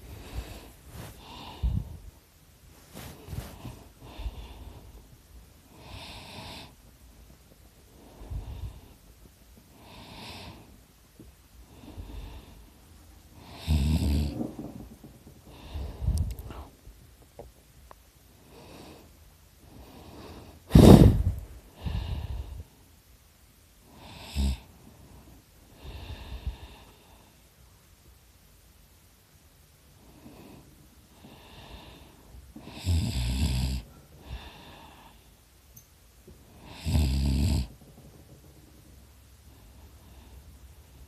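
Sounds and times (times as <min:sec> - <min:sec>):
person snoring loudly: 0:13.4 - 0:14.4, 0:24.0 - 0:24.6, 0:32.6 - 0:35.0, 0:36.6 - 0:37.7
sharp snort: 0:20.7 - 0:22.0.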